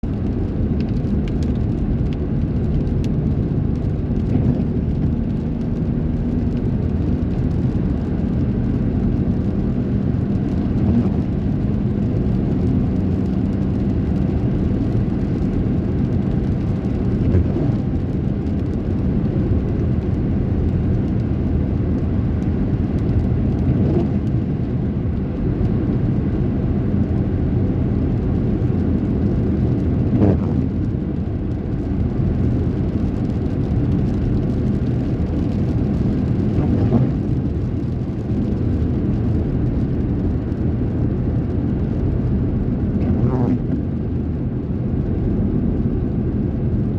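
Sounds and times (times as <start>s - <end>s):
car engine and wet road rumble: 0.0s - 46.9s
rain hissing: 31.8s - 45.8s.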